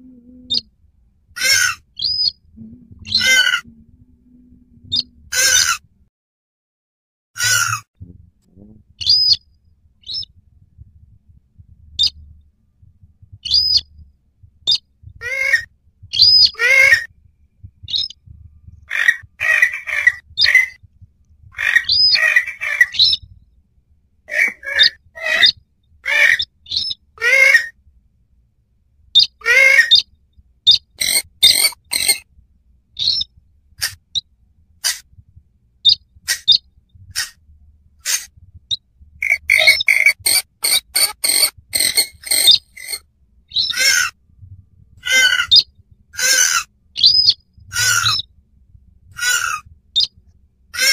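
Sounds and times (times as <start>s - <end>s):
swamphen calling: 1.4s - 3.8s, 4.9s - 5.8s, 7.4s - 7.9s, 9.0s - 9.4s, 13.4s - 13.8s, 14.7s - 17.1s, 17.9s - 18.2s, 18.9s - 20.8s, 21.6s - 23.2s, 24.3s - 27.7s, 29.2s - 30.0s, 30.7s - 32.2s, 33.0s - 34.0s, 35.9s - 37.3s, 38.0s - 38.3s, 39.2s - 44.2s, 45.0s - 45.6s, 46.2s - 48.2s, 49.2s - 50.1s.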